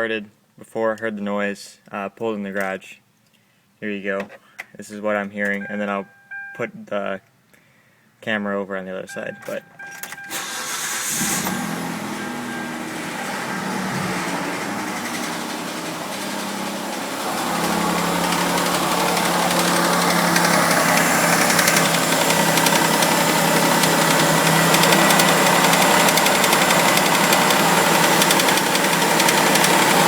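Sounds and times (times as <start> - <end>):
car engine idling with ticking: 9.3 - 30.0.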